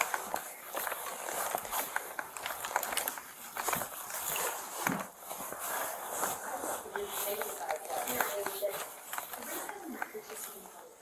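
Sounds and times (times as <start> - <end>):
footsteps in a room: 0.0 - 11.0
rustling: 0.0 - 11.0.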